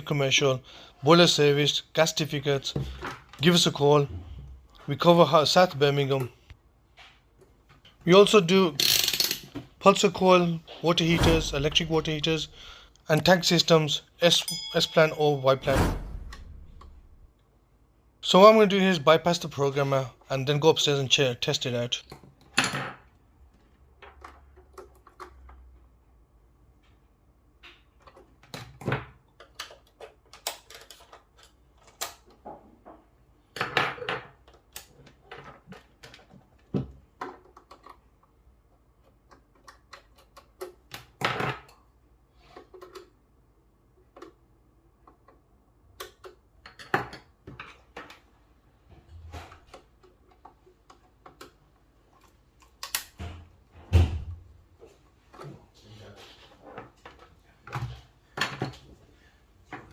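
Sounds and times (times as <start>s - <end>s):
tools and plastic parts clicking: 8.8s - 9.6s, 24.0s - 25.7s, 27.7s - 32.4s, 33.6s - 41.9s, 42.5s - 43.3s, 44.0s - 48.3s, 49.6s - 53.2s.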